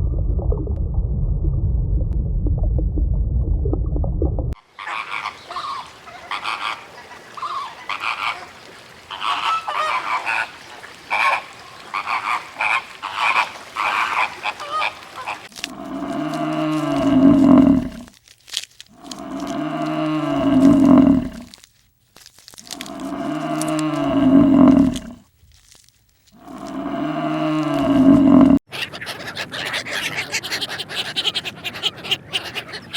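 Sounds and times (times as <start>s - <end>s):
long low animal calls: 4.6s - 18.2s, 18.9s - 21.6s, 22.6s - 25.2s, 26.4s - 28.6s.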